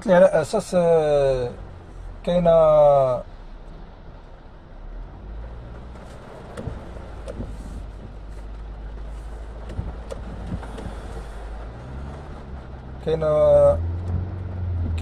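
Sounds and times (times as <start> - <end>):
car engine droning: 0.0 - 15.0
faint engine taps: 5.7 - 12.3.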